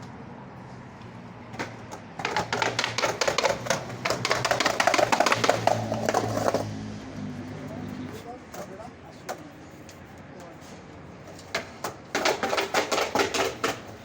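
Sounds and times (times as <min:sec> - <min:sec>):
skateboard clattering down stairs: 0:01.5 - 0:06.7, 0:11.3 - 0:14.0.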